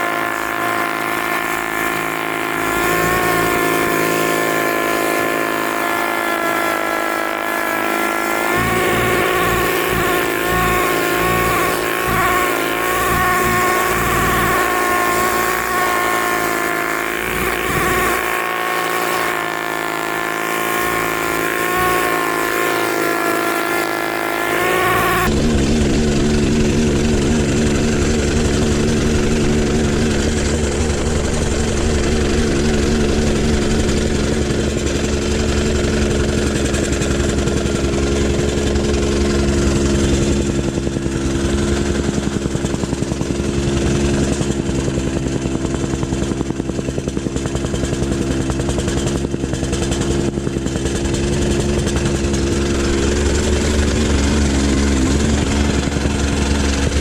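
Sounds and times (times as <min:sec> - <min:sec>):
engine running with shifting pitch: 0:00.0 - 0:57.0
plate compactor pounding: 0:00.0 - 0:57.0.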